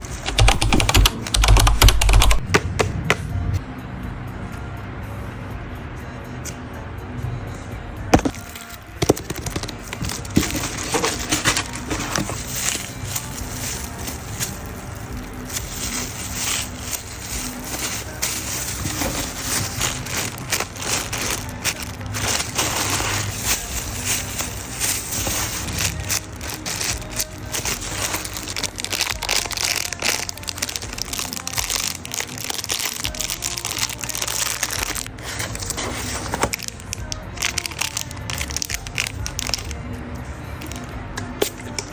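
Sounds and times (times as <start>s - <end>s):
background music: 0.0s - 41.9s
package wrapping crinkling: 8.2s - 39.8s.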